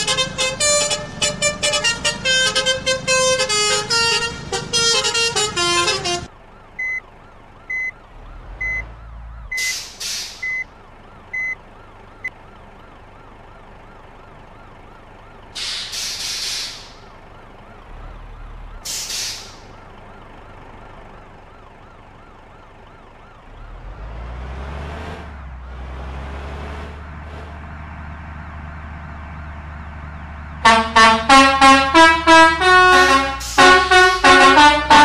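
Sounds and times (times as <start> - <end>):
bus air horn melody: 0.0 - 6.3, 30.6 - 35.0
short hiss: 9.6 - 10.5, 15.6 - 17.0, 18.9 - 19.6.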